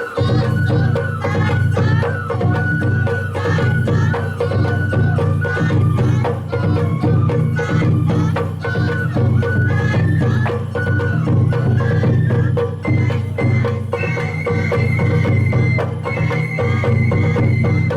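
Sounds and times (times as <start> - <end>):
bamboo flute melody: 0.0 - 17.9
rapid drum and percussion: 0.0 - 17.9.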